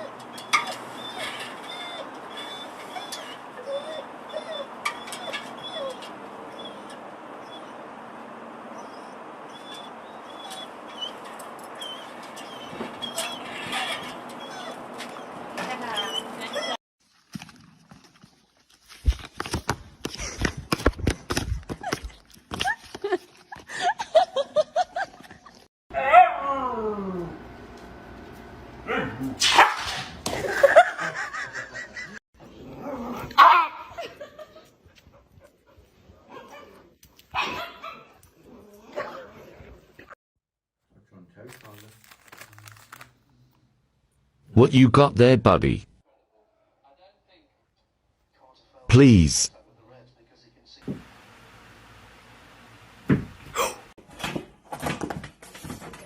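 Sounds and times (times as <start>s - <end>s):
dog barking: 26.0s - 26.4s, 28.9s - 30.0s, 33.4s - 33.9s, 36.3s - 38.1s
person laughing: 30.4s - 32.2s.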